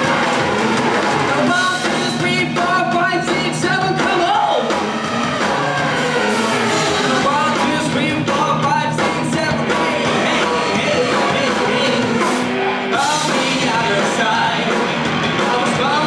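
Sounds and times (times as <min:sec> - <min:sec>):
drums: 0:00.0 - 0:16.0
electric guitars: 0:00.0 - 0:16.0
lead singer vocals: 0:01.2 - 0:04.8, 0:06.3 - 0:16.0.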